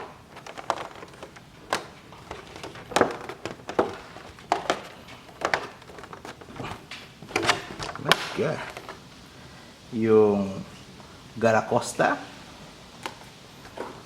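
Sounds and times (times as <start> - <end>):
cards clicking and tapping: 0.0 - 9.0
soft rustling of packaging: 0.0 - 14.0.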